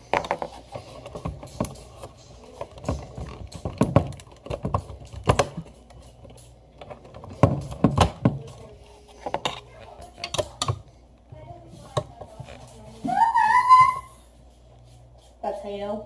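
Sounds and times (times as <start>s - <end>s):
clicks and knocks handling wires: 2.6s - 8.6s, 9.2s - 10.8s.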